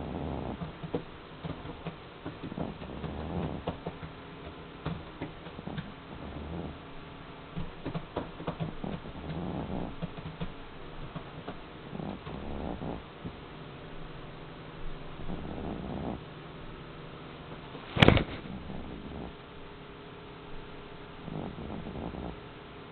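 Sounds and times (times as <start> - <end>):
cat snoring: 0.0 - 4.1, 4.9 - 6.9, 7.8 - 10.5, 11.1 - 13.4, 15.1 - 16.4, 17.5 - 19.5, 21.1 - 22.6.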